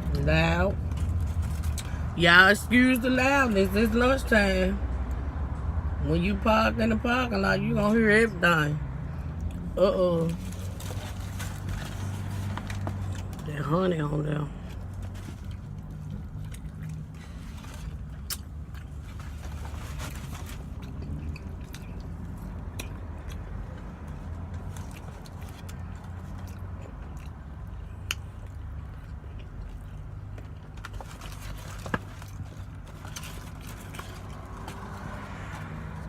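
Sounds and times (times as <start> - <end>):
chewing and mouth smacking: 20.8 - 31.1.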